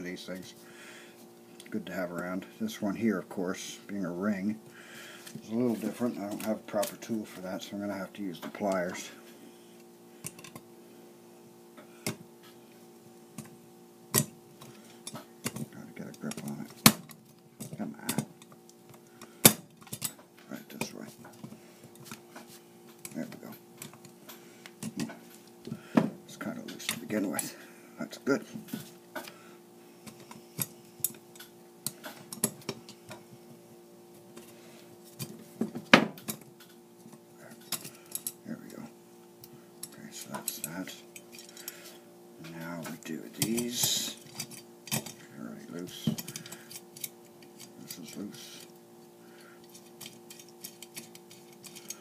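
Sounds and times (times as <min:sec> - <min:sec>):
background hum: 0:00.0 - 0:52.0
pliers clicking and scraping metal: 0:15.0 - 0:20.2, 0:37.6 - 0:38.4, 0:39.8 - 0:41.8, 0:42.8 - 0:45.2, 0:45.9 - 0:48.8, 0:49.6 - 0:52.0.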